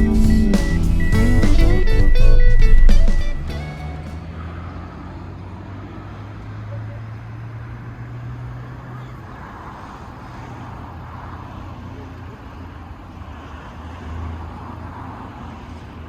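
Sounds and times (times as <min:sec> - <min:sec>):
low engine hum: 0:00.0 - 0:07.9
road noise: 0:00.0 - 0:16.0.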